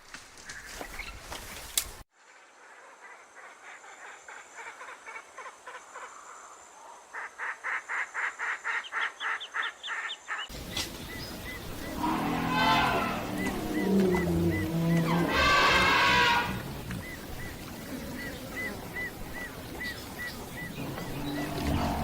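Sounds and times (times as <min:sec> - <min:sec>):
rapid pulsing animal calls: 0:09.3 - 0:22.0
deep rising and falling animal call: 0:11.5 - 0:22.0.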